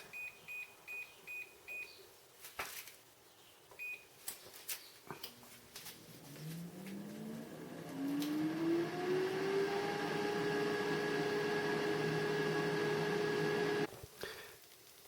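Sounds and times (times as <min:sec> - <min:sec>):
air fryer fan humming: 0:05.2 - 0:13.9.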